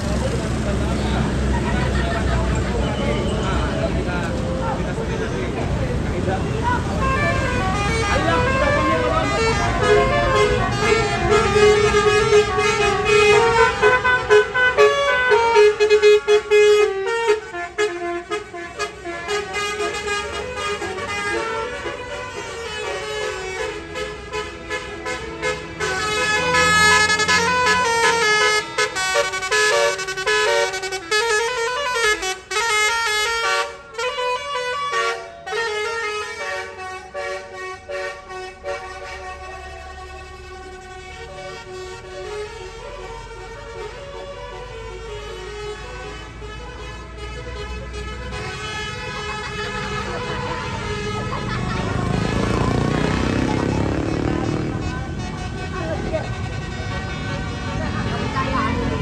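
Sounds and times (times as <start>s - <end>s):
musical air horn playing tune: 6.5s - 59.0s.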